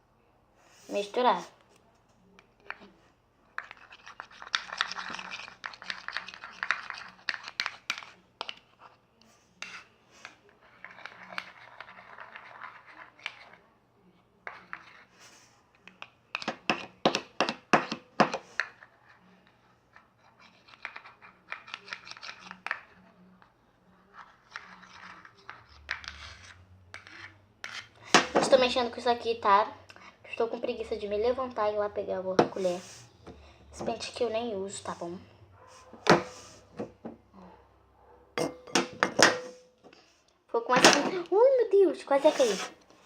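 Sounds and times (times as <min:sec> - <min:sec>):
comb scraping in pot: 0:42.1 - 0:42.8.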